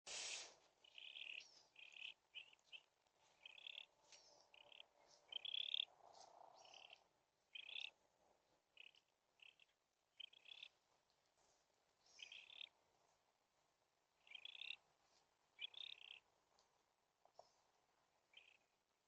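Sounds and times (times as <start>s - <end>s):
birds chirping: 0.2s - 10.8s, 12.0s - 12.8s, 14.2s - 14.8s, 15.5s - 16.3s, 17.3s - 18.8s
faint rising bird notes: 0.8s - 7.9s.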